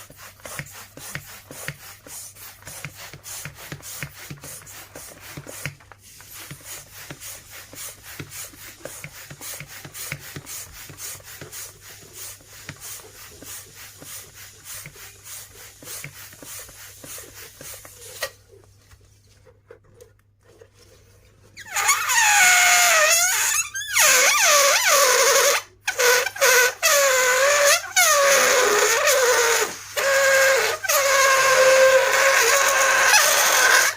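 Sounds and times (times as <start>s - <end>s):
rubber balloon squealing: 21.6s - 33.9s.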